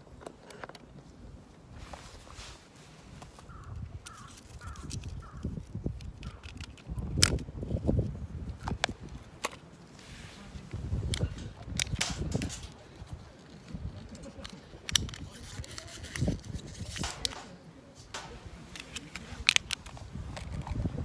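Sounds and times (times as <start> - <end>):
wind rumbling on microphone: 3.1 - 21.0
campfire crackling and popping: 11.0 - 15.2.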